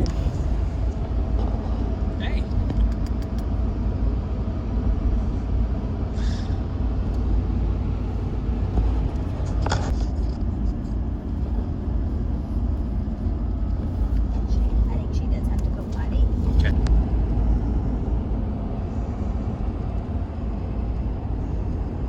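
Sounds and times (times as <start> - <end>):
road rumble inside car: 0.0 - 22.0.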